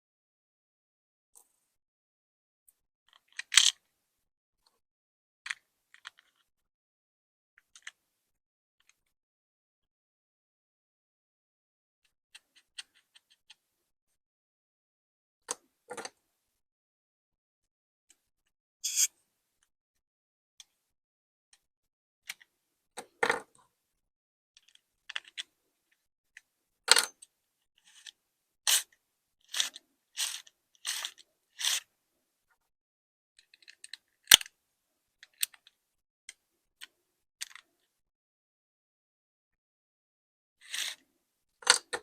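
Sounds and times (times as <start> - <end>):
short scrapes and clicks: 18.8 - 19.2, 27.8 - 31.9, 40.6 - 41.8.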